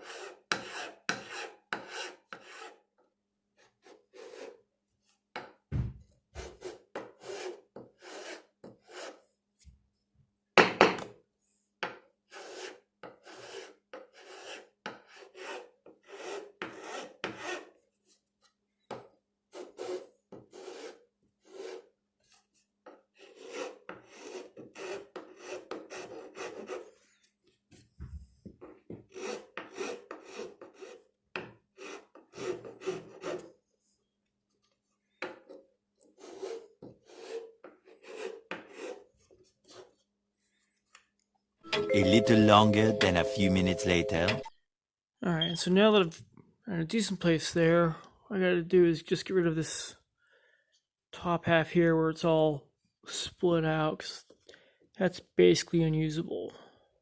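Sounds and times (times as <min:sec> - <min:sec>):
rasp scraping wood: 0:00.0 - 0:02.8, 0:03.8 - 0:04.6, 0:06.4 - 0:09.2, 0:12.3 - 0:17.7, 0:19.5 - 0:21.9, 0:23.2 - 0:26.9, 0:29.1 - 0:31.0, 0:31.8 - 0:33.5, 0:36.2 - 0:39.9.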